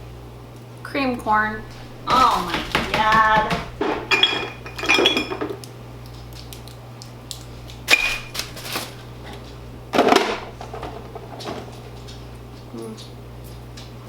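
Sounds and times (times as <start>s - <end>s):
containers and jars clinking: 2.0s - 5.6s, 7.9s - 9.1s.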